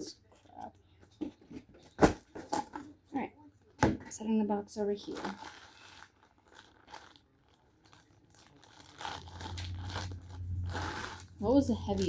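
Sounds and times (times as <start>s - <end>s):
cardboard packaging rustling: 5.0s - 12.0s
low hum: 9.2s - 12.0s.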